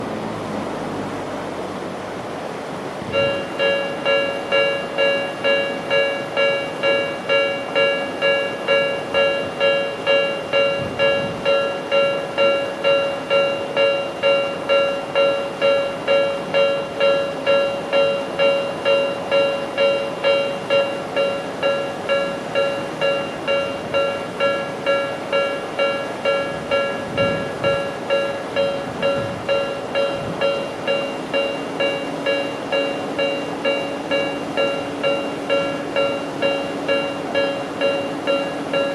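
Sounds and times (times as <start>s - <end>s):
level crossing warning bell: 3.1s - 38.9s.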